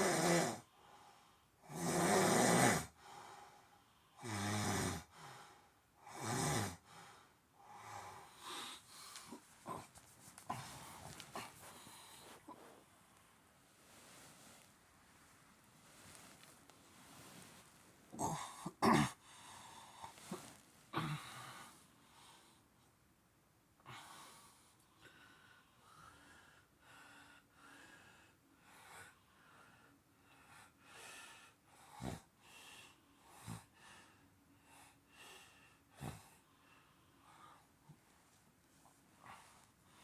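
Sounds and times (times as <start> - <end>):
person snoring: 0.0 - 0.7, 1.7 - 3.0, 18.1 - 19.2.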